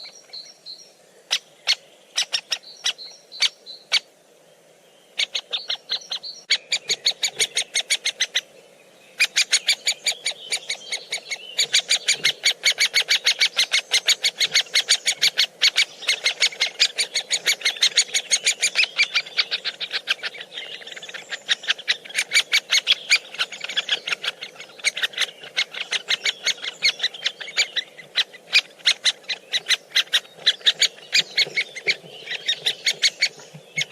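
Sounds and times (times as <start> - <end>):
birds chirping: 0.0 - 33.9
woodpecker pecking taps: 29.3 - 33.9.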